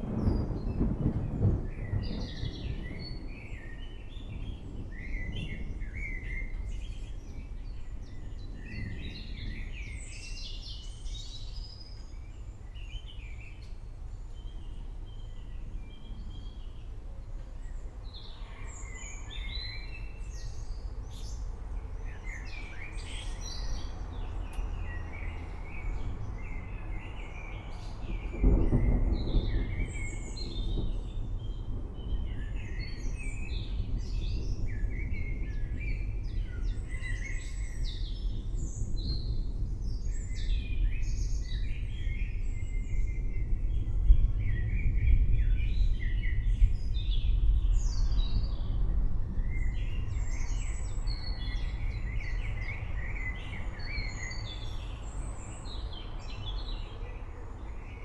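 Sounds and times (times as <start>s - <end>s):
thunder rolling: 0.0s - 10.0s, 18.7s - 56.0s.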